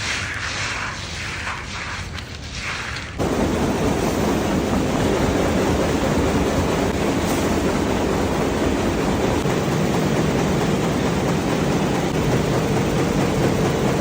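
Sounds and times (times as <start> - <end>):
factory machinery din: 3.2 - 14.0.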